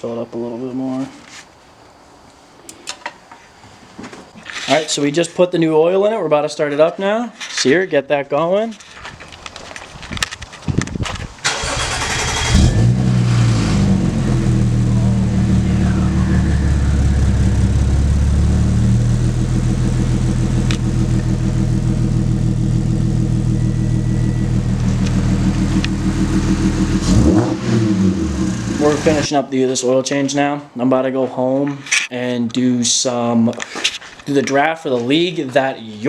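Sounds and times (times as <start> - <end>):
starter cranking: 11.5 - 13.0
car engine idling: 11.5 - 29.3.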